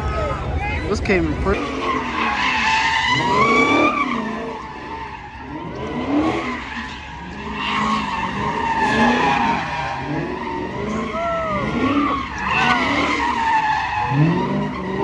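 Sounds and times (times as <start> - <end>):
tires squealing on pavement: 0.0 - 15.0
car engine revving: 0.1 - 15.0.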